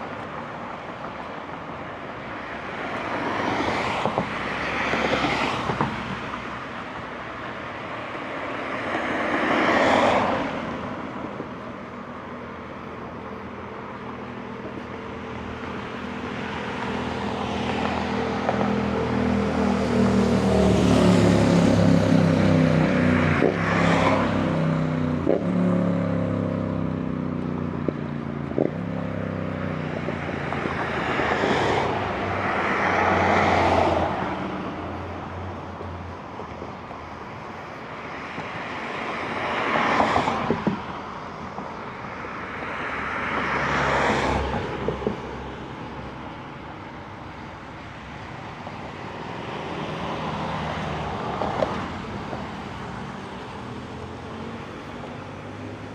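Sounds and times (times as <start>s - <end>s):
cars passing with tyre noise: 0.0s - 55.9s
vehicle engine passing: 14.4s - 27.7s.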